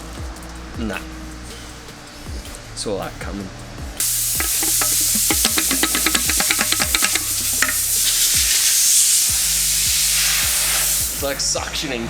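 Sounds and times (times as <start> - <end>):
rapid clicks: 4.0 - 8.5
loud steady hiss: 4.0 - 12.0.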